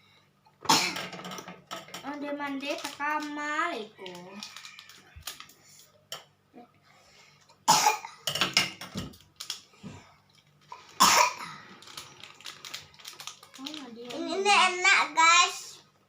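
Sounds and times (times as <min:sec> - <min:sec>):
child coughing: 0:00.6 - 0:01.1, 0:07.7 - 0:08.3, 0:11.0 - 0:11.6.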